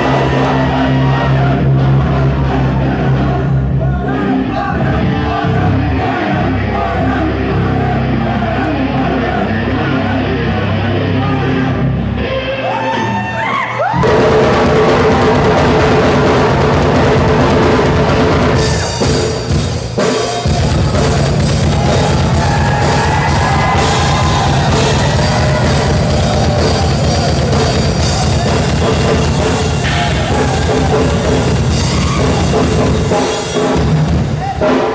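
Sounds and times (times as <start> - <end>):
rock band playing live: 0.0 - 12.7, 13.8 - 34.9
pounding bass drum: 14.0 - 34.9
electric guitar lead line: 20.5 - 34.9.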